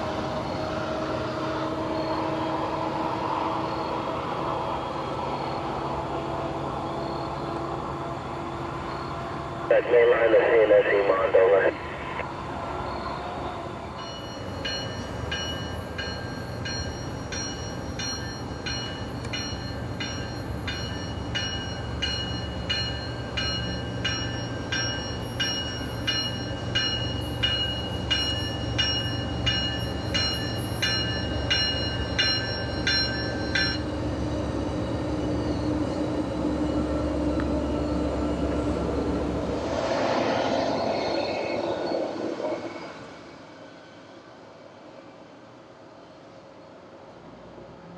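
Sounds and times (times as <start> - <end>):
low rumble of train: 0.0 - 47.9
locomotive bell ringing: 14.0 - 34.1.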